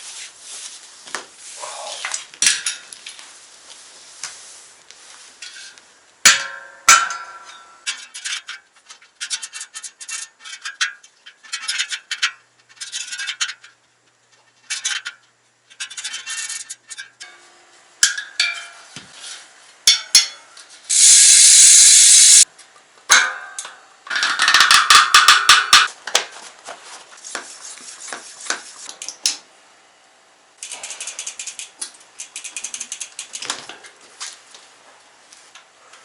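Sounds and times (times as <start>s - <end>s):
bicycle freehub ratchet clicking: 20.9s - 22.4s, 30.6s - 33.4s.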